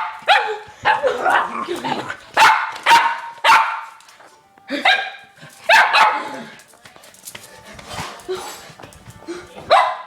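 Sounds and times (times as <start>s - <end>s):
dog barking: 0.0s - 1.5s, 2.4s - 4.0s, 4.8s - 6.5s, 9.7s - 10.0s.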